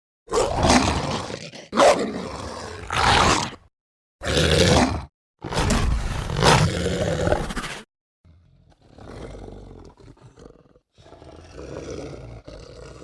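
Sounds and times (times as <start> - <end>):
creature vocalizations: 4.2 - 7.9.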